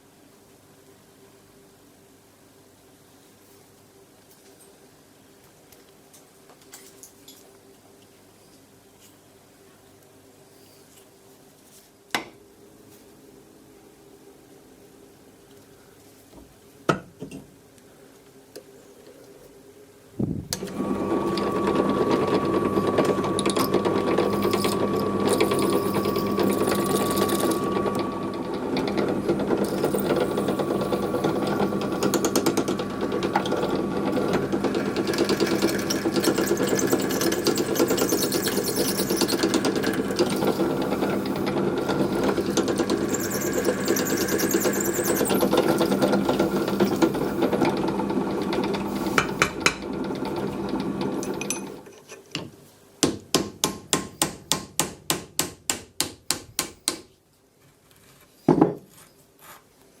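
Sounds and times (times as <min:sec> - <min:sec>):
small motor tool whirring: 0:20.7 - 0:47.8.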